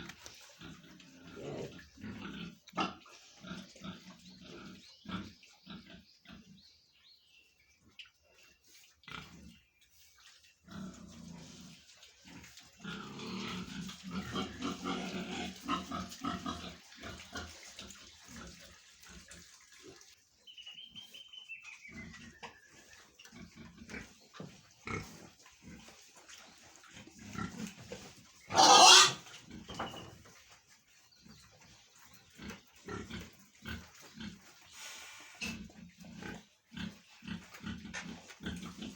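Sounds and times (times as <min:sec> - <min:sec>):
pigs grunting: 0:00.0 - 0:06.6, 0:10.6 - 0:19.6, 0:23.3 - 0:26.0, 0:27.0 - 0:29.8, 0:32.2 - 0:38.9
pig squealing: 0:28.5 - 0:29.3.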